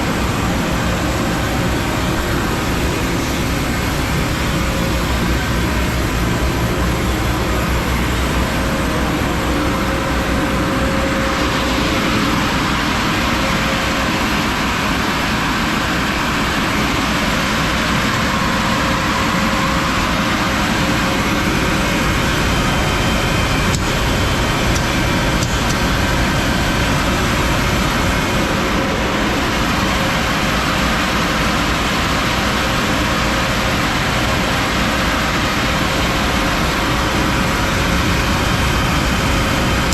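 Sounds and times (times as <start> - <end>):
belt sander running: 14.6 - 30.6.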